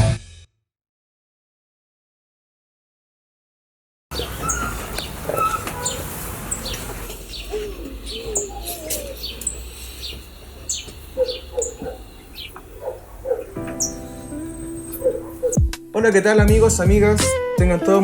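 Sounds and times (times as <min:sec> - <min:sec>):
low warbling bird calls: 0:04.1 - 0:15.8
birds chirping: 0:04.1 - 0:17.1.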